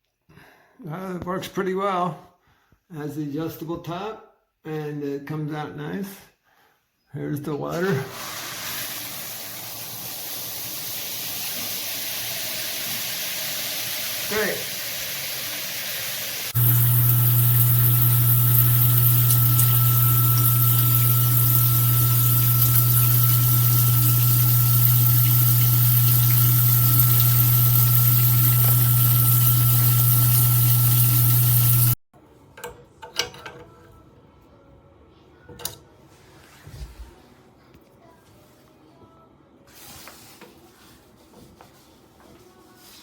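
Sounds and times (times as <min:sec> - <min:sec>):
shower water spraying: 0:08.1 - 0:32.0
low hum: 0:16.6 - 0:32.0.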